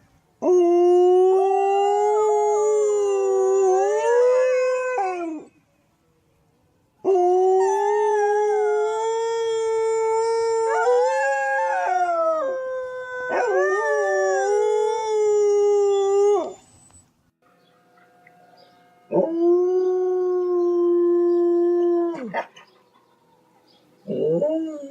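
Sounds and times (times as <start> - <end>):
dogs howling: 7.1 - 16.6, 19.1 - 23.1.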